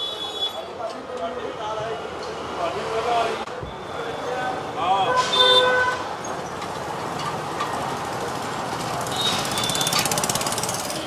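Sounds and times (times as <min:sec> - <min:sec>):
motorcycle engine running: 0:09.1 - 0:11.0.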